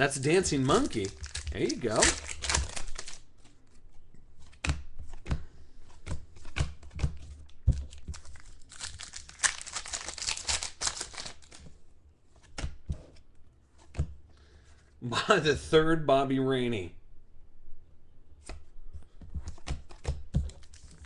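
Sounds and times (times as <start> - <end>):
plastic wrapper crinkling and tearing: 0.2 - 3.4, 7.9 - 11.6, 20.6 - 21.0.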